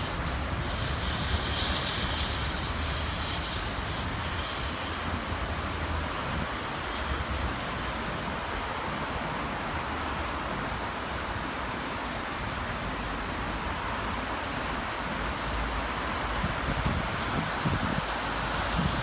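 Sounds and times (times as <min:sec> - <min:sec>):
train wheels on track: 0:00.0 - 0:19.0.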